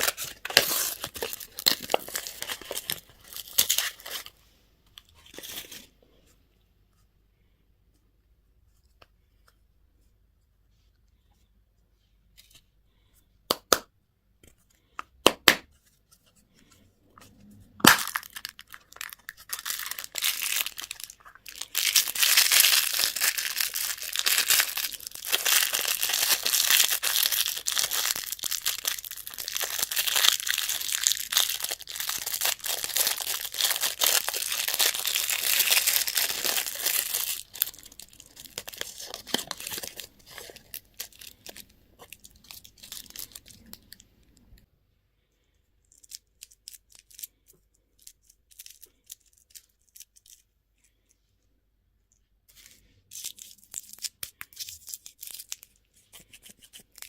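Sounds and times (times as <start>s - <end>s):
candy wrapper crinkling and tearing: 0.0s - 4.4s, 17.8s - 44.4s, 45.8s - 51.0s, 52.5s - 57.0s.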